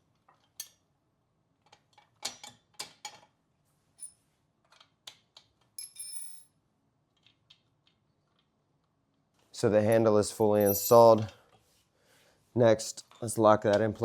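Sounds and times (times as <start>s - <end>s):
metal parts clicking and clinking: 9.9s - 11.4s.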